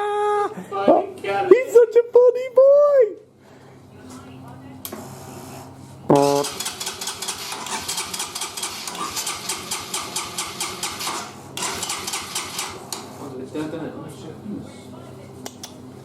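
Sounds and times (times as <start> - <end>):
horn beep: 6.1 - 6.5
electric starter cranking engine: 6.1 - 13.2.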